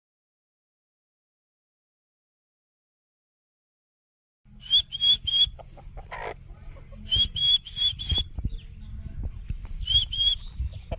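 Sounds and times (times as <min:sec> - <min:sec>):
person whistling: 0:04.6 - 0:05.5, 0:07.1 - 0:08.3, 0:09.8 - 0:10.5.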